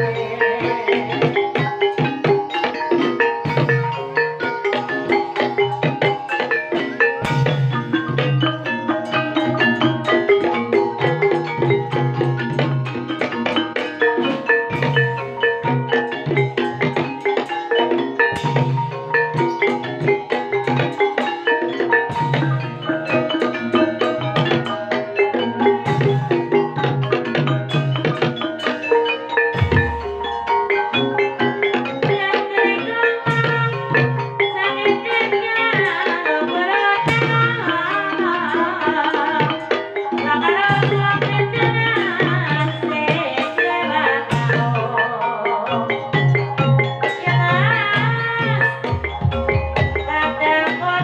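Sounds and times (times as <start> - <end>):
person singing: 0.0 - 1.7
gamelan bars ringing: 0.0 - 51.0
sustained metallophone notes: 0.0 - 51.0
hand drum strokes: 29.5 - 30.5.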